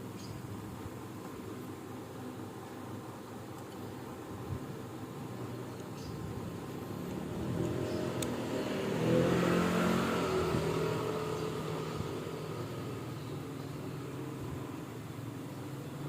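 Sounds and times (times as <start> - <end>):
vehicle engine passing by: 6.7 - 13.1.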